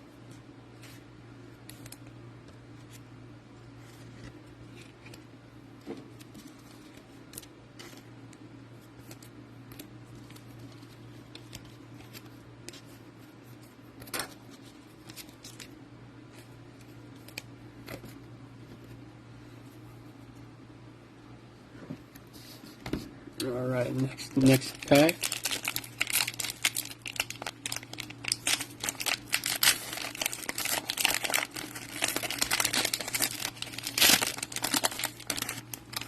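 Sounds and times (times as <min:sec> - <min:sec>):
steady low hum: 0:00.0 - 0:36.0
cards and wrappers handled: 0:08.8 - 0:18.2, 0:23.7 - 0:36.0.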